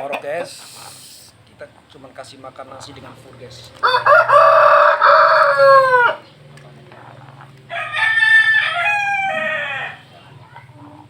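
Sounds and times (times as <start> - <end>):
rooster crowing: 3.8 - 6.2, 7.7 - 10.1.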